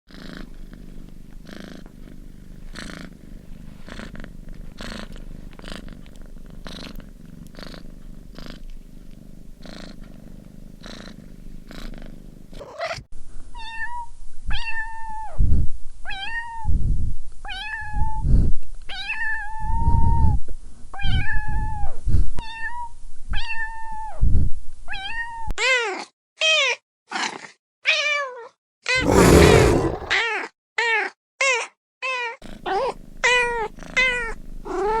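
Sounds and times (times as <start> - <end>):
cat purring: 0.1 - 12.9, 29.0 - 30.2.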